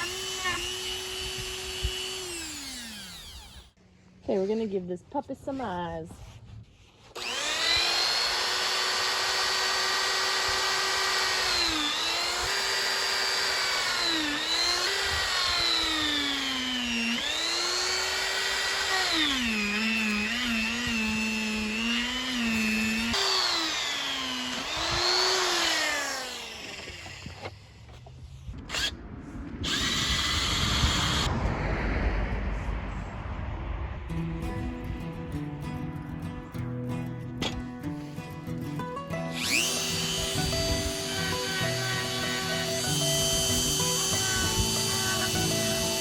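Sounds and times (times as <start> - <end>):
power carving tool whining: 0.0 - 3.8, 7.1 - 27.9, 28.7 - 28.9, 29.6 - 31.3, 39.3 - 46.0.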